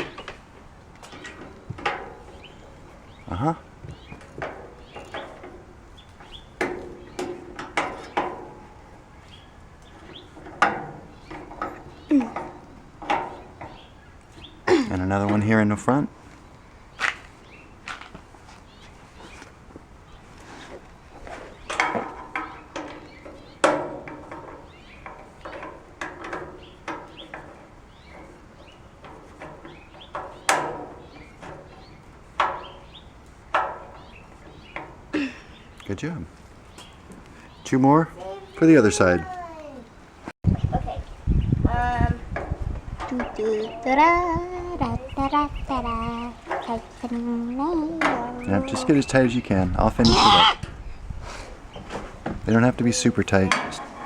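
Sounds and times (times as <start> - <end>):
knocks on metal grill parts: 1.0 - 2.6, 3.3 - 8.9, 9.8 - 14.5, 21.2 - 35.1, 53.4 - 54.0.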